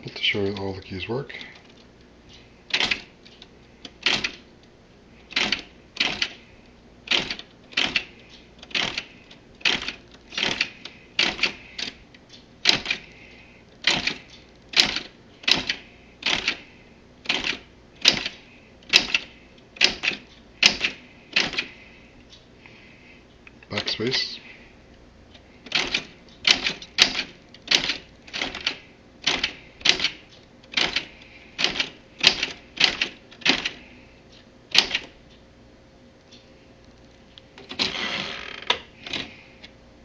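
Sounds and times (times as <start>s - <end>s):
typewriter keys clacking: 2.7s - 4.4s, 5.3s - 6.4s, 7.1s - 12.0s, 13.8s - 16.6s, 17.3s - 21.7s, 25.7s - 33.8s.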